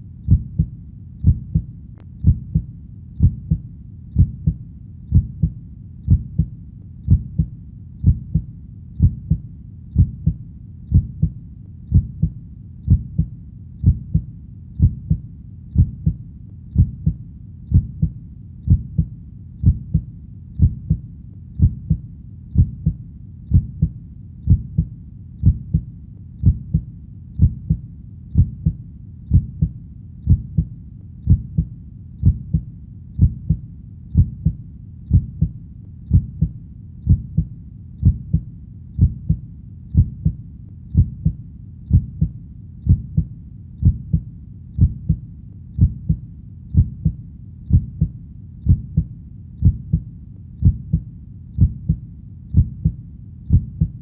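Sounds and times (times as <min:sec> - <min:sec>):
heartbeat double thump: 0:00.3 - 0:03.6, 0:04.2 - 0:06.5, 0:07.1 - 0:09.4, 0:10.0 - 0:15.2, 0:15.8 - 0:16.2, 0:16.8 - 0:21.0, 0:21.6 - 0:22.0, 0:22.6 - 0:26.8, 0:27.4 - 0:27.8, 0:28.4 - 0:30.7, 0:31.3 - 0:32.6, 0:33.2 - 0:33.6, 0:34.2 - 0:39.4, 0:40.0 - 0:40.4, 0:41.0 - 0:42.3, 0:42.9 - 0:44.2, 0:44.8 - 0:45.2, 0:45.8 - 0:46.2, 0:46.8 - 0:48.1, 0:48.7 - 0:52.0, 0:52.6 - 0:54.0.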